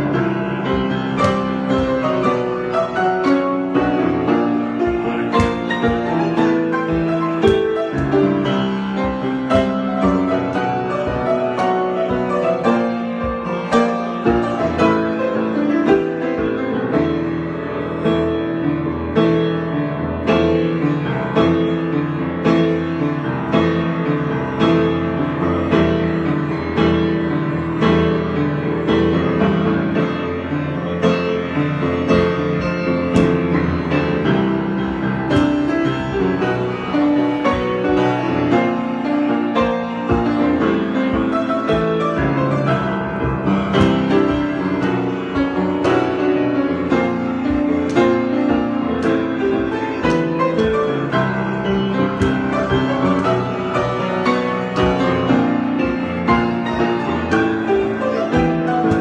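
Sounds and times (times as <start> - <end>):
solo piano improvisation: 0.0 - 59.0.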